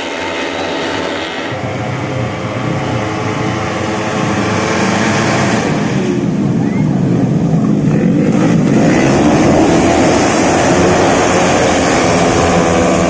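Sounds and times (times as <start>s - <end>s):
racing scooter engines at high revs: 0.0s - 13.0s.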